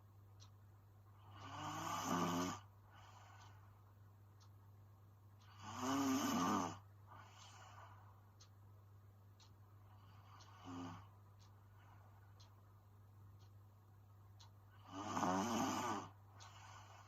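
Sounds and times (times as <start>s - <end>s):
woman snoring: 1.4s - 2.6s, 5.5s - 6.8s, 10.4s - 11.1s, 14.8s - 17.0s.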